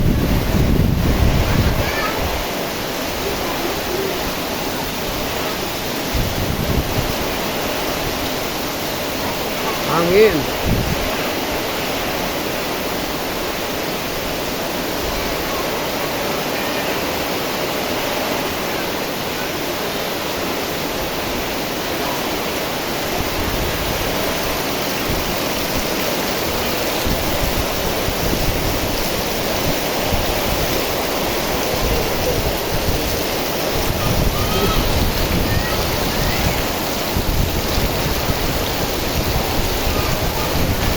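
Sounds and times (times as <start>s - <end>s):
wind rumbling on microphone: 0.0s - 16.4s, 17.1s - 40.9s
torrential rain hiss: 0.0s - 40.9s.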